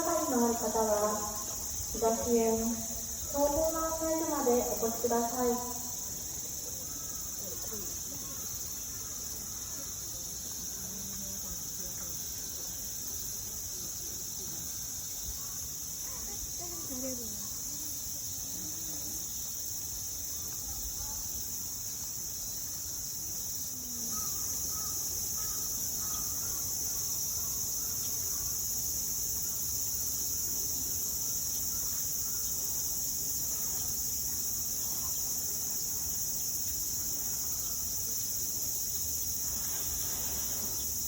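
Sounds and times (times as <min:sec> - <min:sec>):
high-pitched insect chorus: 0:00.0 - 0:41.0
faint crow caws: 0:24.1 - 0:26.7.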